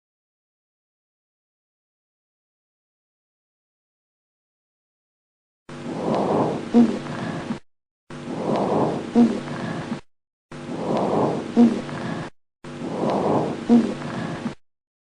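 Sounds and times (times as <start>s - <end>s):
recorded breath with squeak: 5.7s - 7.6s, 8.2s - 10.0s, 10.6s - 14.6s.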